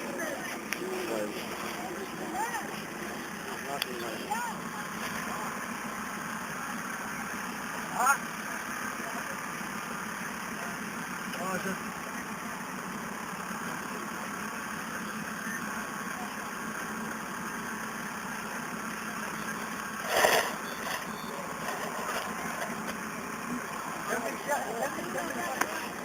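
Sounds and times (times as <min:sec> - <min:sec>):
steady background hum: 0:00.0 - 0:11.1.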